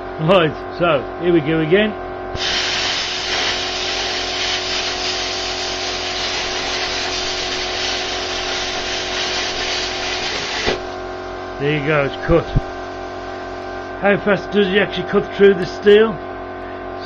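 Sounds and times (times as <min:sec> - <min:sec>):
generator droning: 0:00.0 - 0:17.0
plasma cutter hissing: 0:02.4 - 0:11.0, 0:11.8 - 0:13.6.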